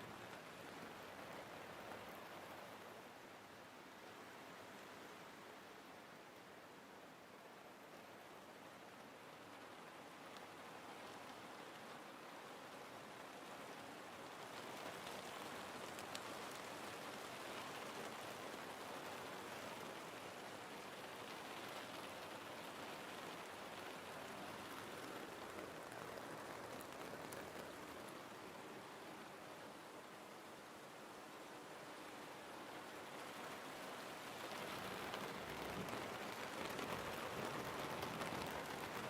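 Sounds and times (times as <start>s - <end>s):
steady rain falling: 0.0s - 39.0s
sharp raindrop ticks: 14.4s - 20.0s, 21.1s - 28.6s, 34.2s - 39.0s.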